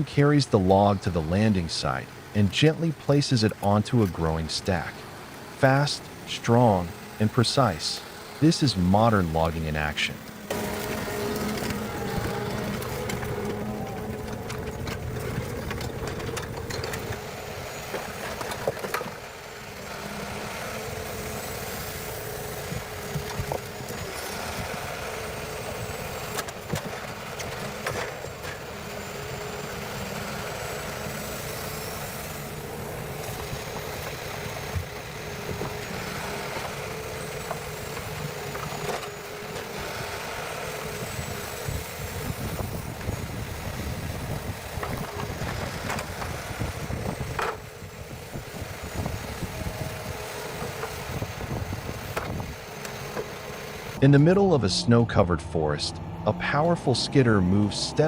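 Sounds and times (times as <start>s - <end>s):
heavy machine engine running: 3.5s - 58.0s.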